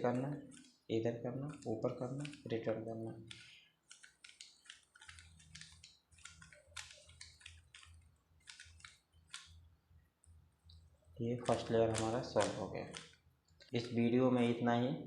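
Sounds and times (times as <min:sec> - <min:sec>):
puzzle cube plastic clicks: 0:03.2 - 0:09.6, 0:11.4 - 0:14.0.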